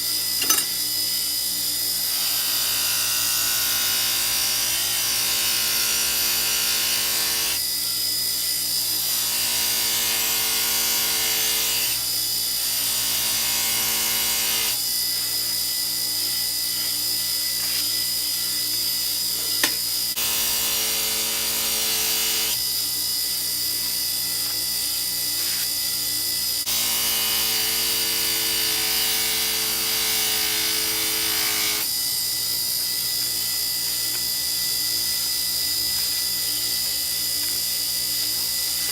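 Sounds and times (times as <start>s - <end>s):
electric grinder sharpening knife: 0.0s - 38.9s.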